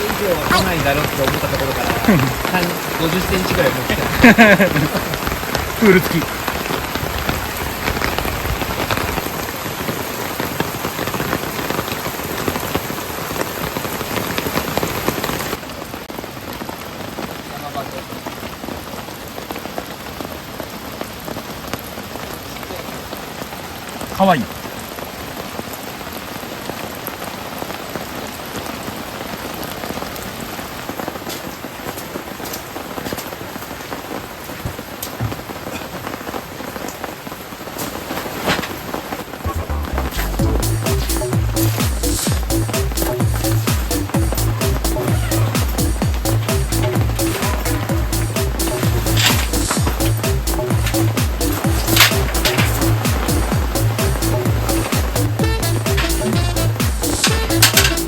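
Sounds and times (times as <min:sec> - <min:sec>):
rain falling: 0:00.0 - 0:58.0.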